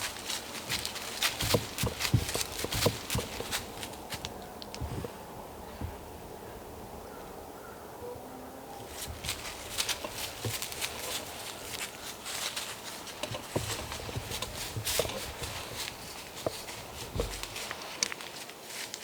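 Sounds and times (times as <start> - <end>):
footsteps crunching dry leaves: 0.0 - 4.4, 8.9 - 19.0.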